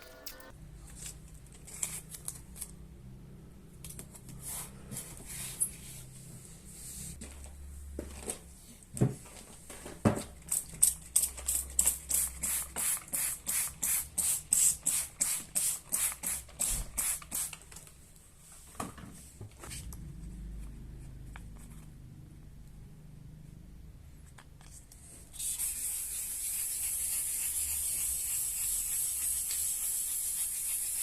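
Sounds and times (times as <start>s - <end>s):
sandpaper rubbing on plastic: 25.4s - 31.0s.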